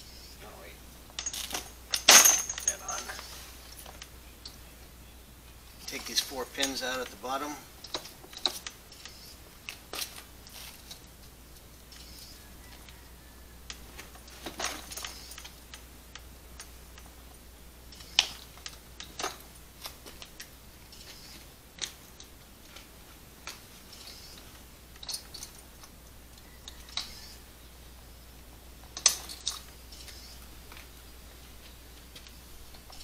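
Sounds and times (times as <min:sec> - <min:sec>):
metal pins clicking and clinking: 0:01.1 - 0:04.6, 0:05.8 - 0:12.1, 0:23.4 - 0:27.2, 0:28.8 - 0:30.9.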